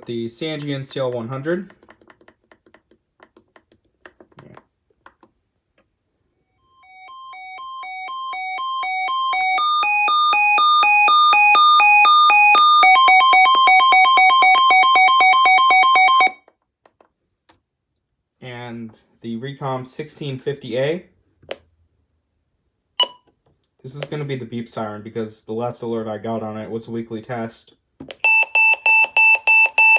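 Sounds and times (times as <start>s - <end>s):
electronic two-tone warble siren: 6.6s - 16.4s.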